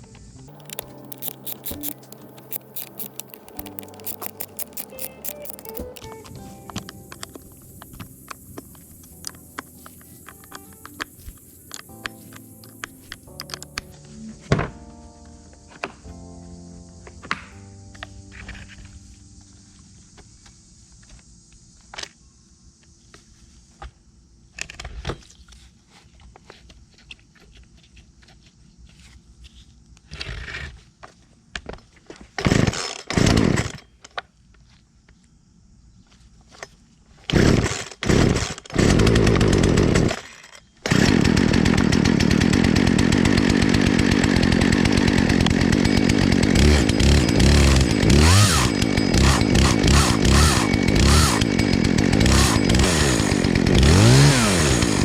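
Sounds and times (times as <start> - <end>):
handling clicks: 0.5 - 13.9
chainsaw engine starting and running: 0.5 - 14.7, 32.4 - 33.8, 37.3 - 55.0.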